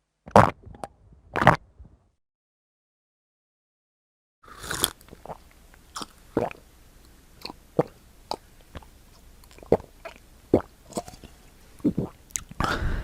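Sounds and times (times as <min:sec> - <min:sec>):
person gulping water: 0:04.5 - 0:05.4, 0:07.4 - 0:08.9, 0:09.5 - 0:12.8.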